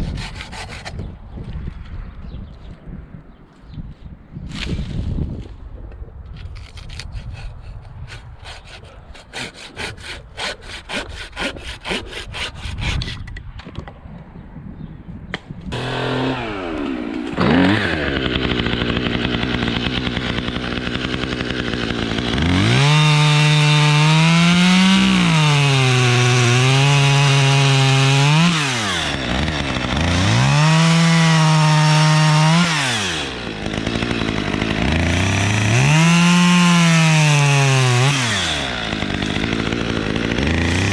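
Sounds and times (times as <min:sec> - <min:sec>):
hand saw rasping through wood: 0:00.0 - 0:01.1, 0:06.6 - 0:13.3, 0:15.8 - 0:40.9
chainsaw revving: 0:15.7 - 0:40.9.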